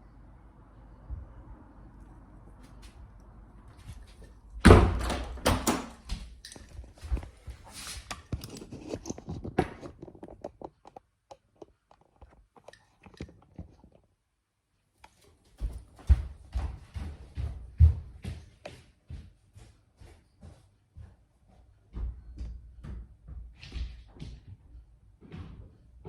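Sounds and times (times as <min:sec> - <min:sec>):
loud thump: 0:04.6 - 0:05.7.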